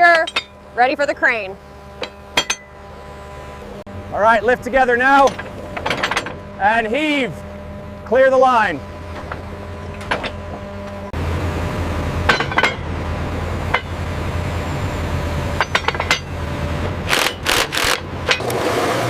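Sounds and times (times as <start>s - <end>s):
metal clinks and knocks: 0.0s - 0.6s, 2.0s - 2.8s, 5.2s - 6.5s, 12.3s - 12.9s, 15.6s - 16.3s
steady machine hum: 0.0s - 19.0s.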